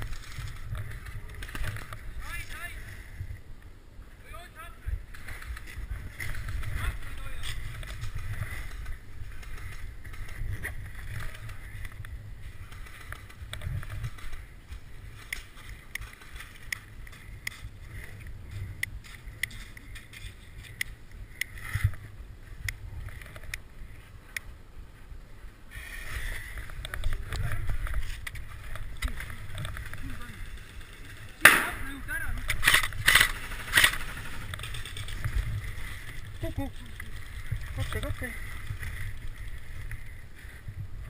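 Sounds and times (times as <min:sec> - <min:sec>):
wind rumble on microphone: 0:00.0 - 0:41.0
camera handling noise: 0:32.4 - 0:35.3
sharp clicks: 0:32.4 - 0:35.4.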